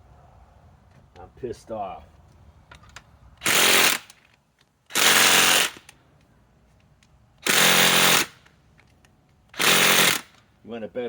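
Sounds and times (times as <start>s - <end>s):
impact wrench hammering: 7.4s - 8.4s.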